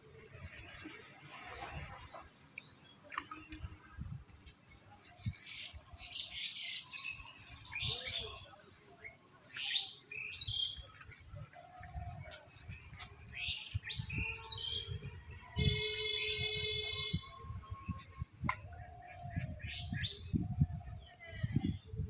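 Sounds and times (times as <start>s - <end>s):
birds chirping: 5.1s - 21.9s.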